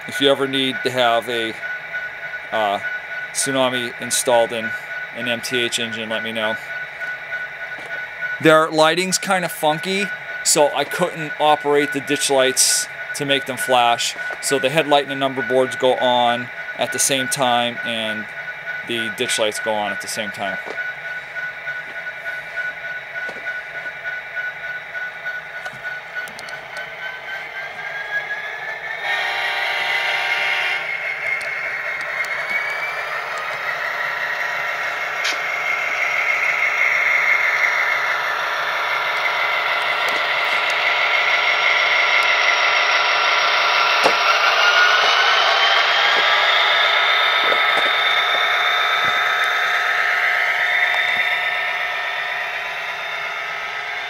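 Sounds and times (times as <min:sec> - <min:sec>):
diesel engine sound through small speaker: 0:00.0 - 0:01.6, 0:03.4 - 0:06.6, 0:08.4 - 0:20.8
model locomotive engine whine: 0:00.0 - 0:54.0.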